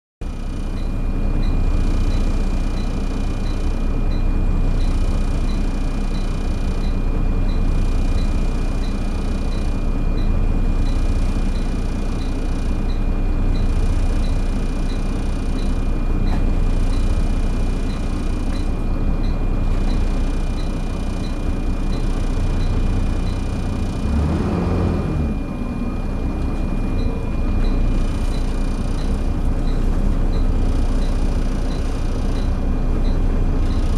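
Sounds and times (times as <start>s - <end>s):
bus engine accelerating: 0.2s - 33.9s
steady high whine: 0.3s - 33.9s
light regular ticking: 4.8s - 23.8s, 27.7s - 33.9s.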